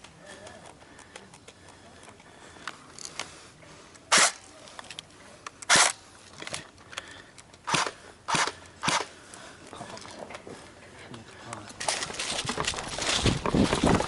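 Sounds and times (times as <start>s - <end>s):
air gun pops: 4.1s - 4.4s, 5.6s - 6.0s, 7.7s - 9.1s.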